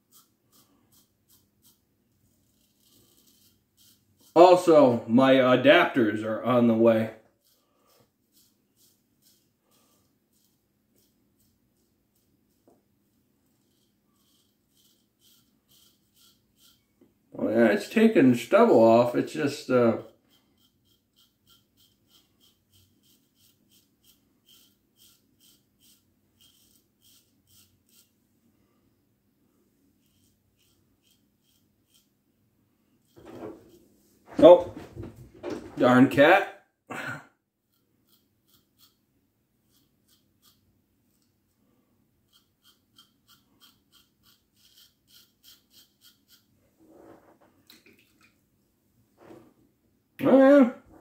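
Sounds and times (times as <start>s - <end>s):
razor scraping stubble: 0.0s - 4.9s, 7.4s - 12.7s, 13.4s - 17.0s, 17.7s - 28.2s, 30.0s - 32.2s, 33.0s - 34.9s, 37.7s - 39.0s, 39.6s - 41.3s, 42.2s - 47.3s.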